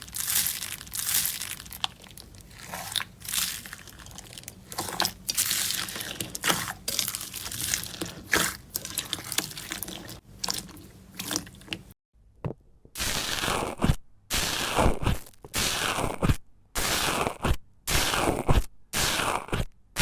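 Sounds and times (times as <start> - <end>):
slime squeezed by hand crackling: 0.0 - 11.7.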